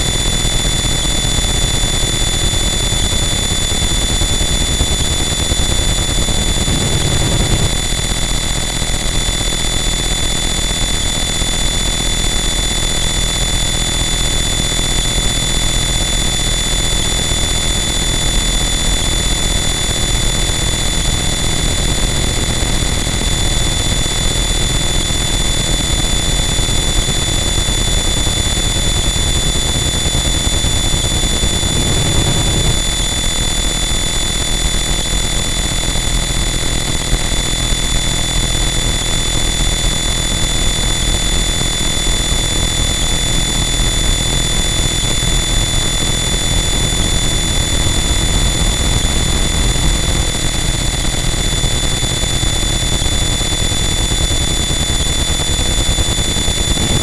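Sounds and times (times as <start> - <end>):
distorted electronic noise wall: 26.7 - 35.0, 39.1 - 57.0
deep rumble: 30.9 - 33.3.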